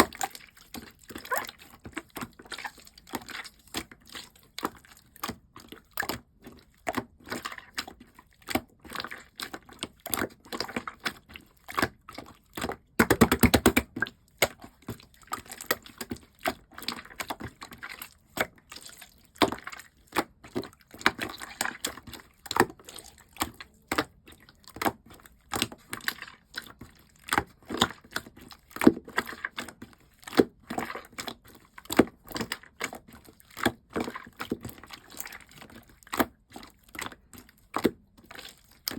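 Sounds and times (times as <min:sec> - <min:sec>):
sticky clicks and bubble pops: 0:13.0 - 0:14.0.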